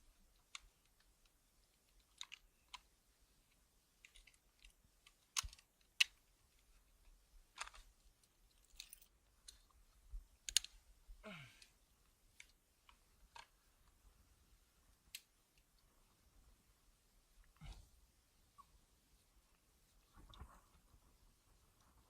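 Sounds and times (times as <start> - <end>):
climbing hardware clicking and clinking: 8.5 - 9.6.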